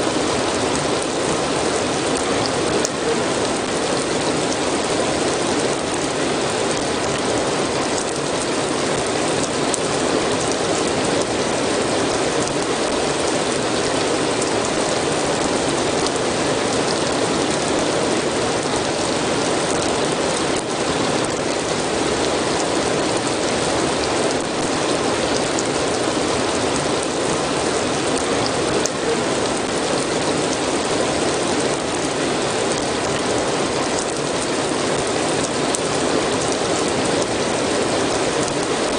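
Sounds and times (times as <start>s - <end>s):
steady rain hiss: 0.0s - 38.9s
raindrop ticks: 6.7s - 11.4s, 12.0s - 13.6s.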